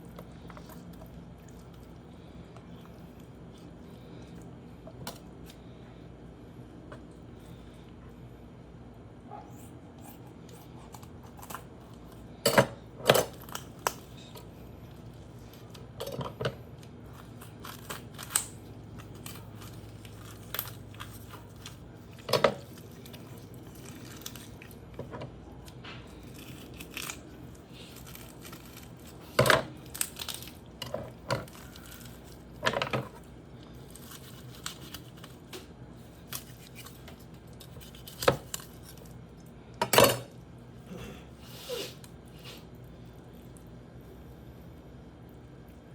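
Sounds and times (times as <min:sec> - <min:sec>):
raw meat tearing: 0:16.7 - 0:32.6, 0:33.2 - 0:39.3.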